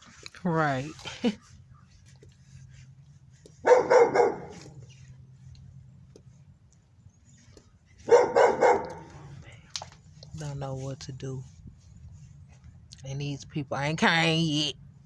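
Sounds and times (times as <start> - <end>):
dog barking: 3.5 - 4.9, 8.0 - 9.3.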